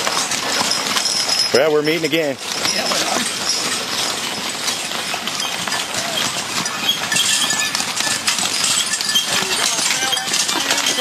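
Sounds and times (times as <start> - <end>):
hooves clip-clopping: 0.0 - 11.0
wagon clatter: 0.0 - 11.0.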